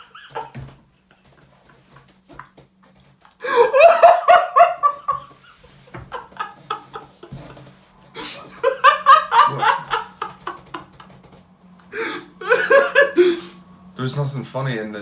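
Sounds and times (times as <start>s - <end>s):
man laughing: 3.3s - 7.5s, 8.2s - 11.1s, 11.9s - 13.6s.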